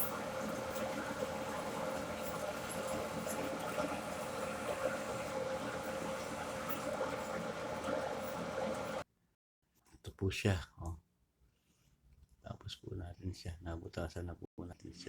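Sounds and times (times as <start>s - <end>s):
metalworking machine humming: 0.0s - 9.0s.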